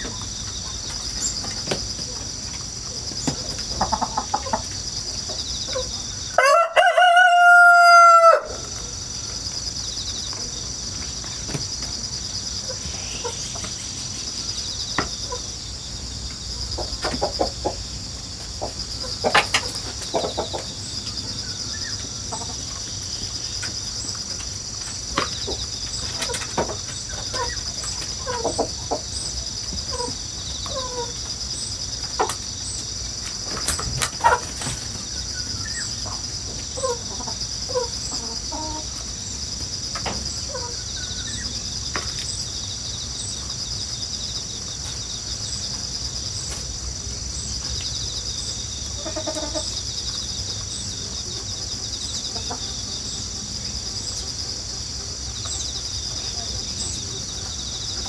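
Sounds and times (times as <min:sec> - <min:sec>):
chicken clucks: 0:00.0 - 0:09.4, 0:12.6 - 0:14.1, 0:15.0 - 0:15.6, 0:16.3 - 0:31.3, 0:32.0 - 0:39.2, 0:39.9 - 0:42.2, 0:48.8 - 0:58.0
grass insects chorus: 0:00.0 - 0:58.0
rooster crowing: 0:06.3 - 0:08.8.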